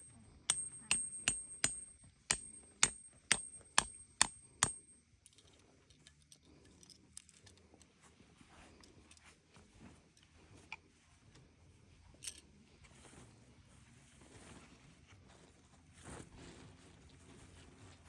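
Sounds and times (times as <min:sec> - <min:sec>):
hammer striking tent peg: 0:00.0 - 0:05.0.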